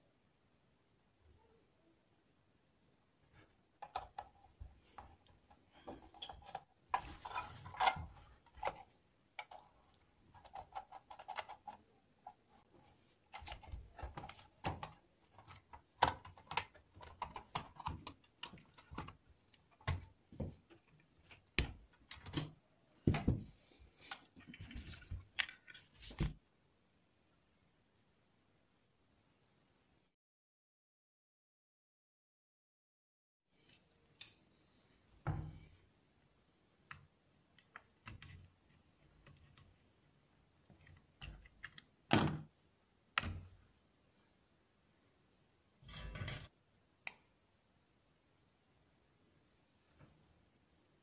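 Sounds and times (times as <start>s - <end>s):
small hard parts clicking and knocking: 3.8s - 25.8s.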